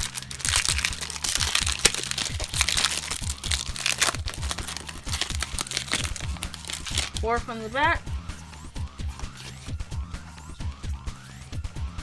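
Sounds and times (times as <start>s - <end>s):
foil wrapper tearing and crinkling: 0.0s - 7.3s.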